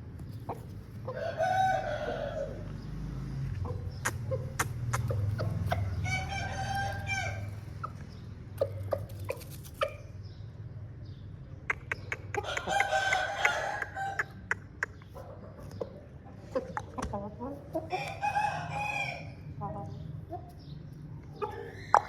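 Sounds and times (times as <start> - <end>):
rooster crowing: 1.1 - 2.7, 5.8 - 7.5, 12.4 - 14.2, 17.9 - 19.4
sharp clicks: 11.6 - 12.4.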